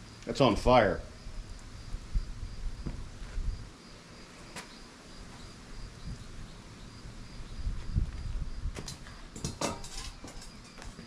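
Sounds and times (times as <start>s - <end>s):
insect chirping: 0.0s - 11.0s
low rumbles: 0.8s - 3.7s.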